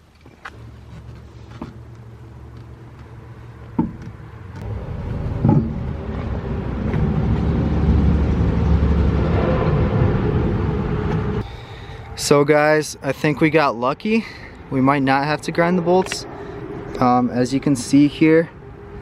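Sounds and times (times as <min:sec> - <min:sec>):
vehicle low rumble: 0:00.0 - 0:19.0
sharp knocks: 0:03.8 - 0:04.2.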